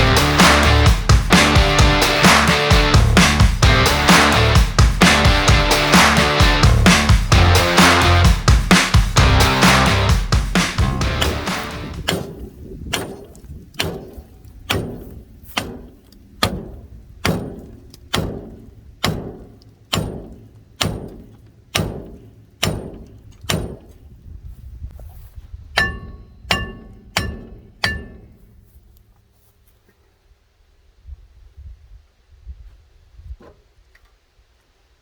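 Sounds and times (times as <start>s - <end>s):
hammer blows on metal: 0.0s - 24.0s, 25.8s - 28.9s.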